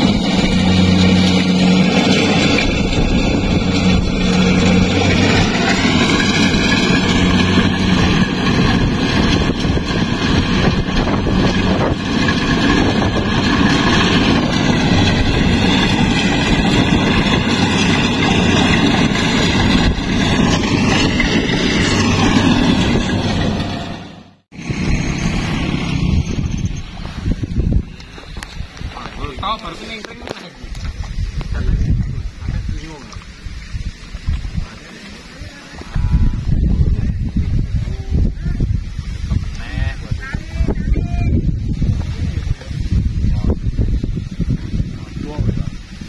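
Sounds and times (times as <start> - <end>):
combine harvester engine drone: 0.0 - 32.6.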